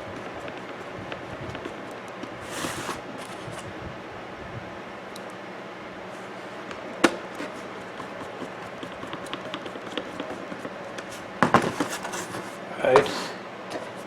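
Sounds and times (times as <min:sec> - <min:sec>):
hands and tools clicking: 0:06.7 - 0:11.1.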